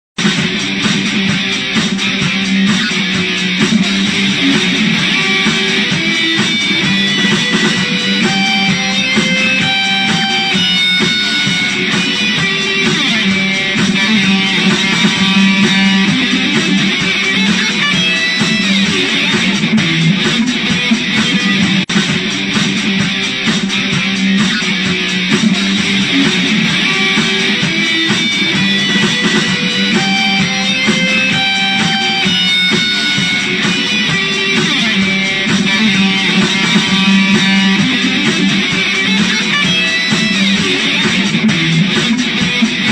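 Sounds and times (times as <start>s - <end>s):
strummed guitar chords: 0.2s - 42.9s.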